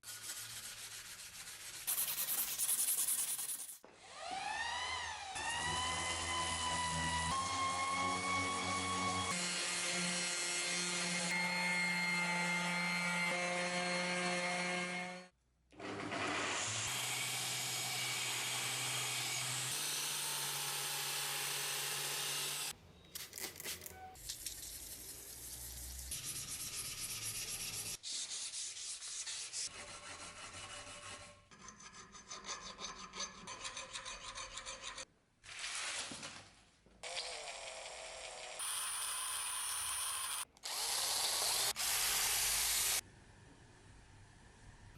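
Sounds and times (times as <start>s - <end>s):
hand filing and sanding strokes: 0.0s - 3.8s, 24.6s - 31.5s.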